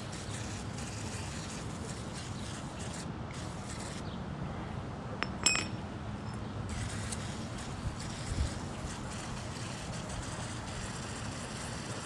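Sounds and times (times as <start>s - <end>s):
low background noise: 0.0s - 12.0s
metallic clink: 5.2s - 6.4s.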